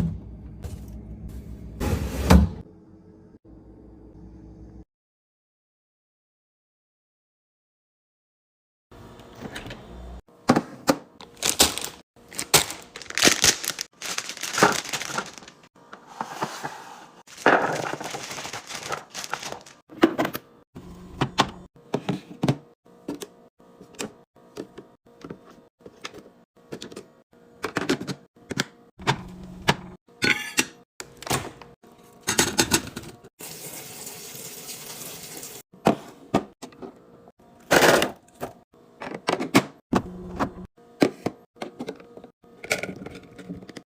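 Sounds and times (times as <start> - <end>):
containers and bottles clattering: 12.6 - 15.6.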